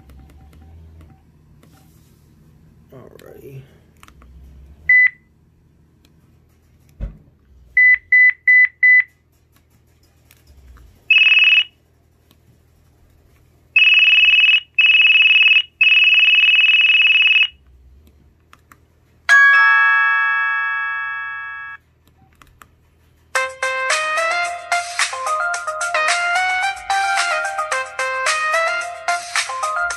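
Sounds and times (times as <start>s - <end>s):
phone ringtone beeps: 11.1s - 11.7s, 13.8s - 17.6s, 19.3s - 21.8s.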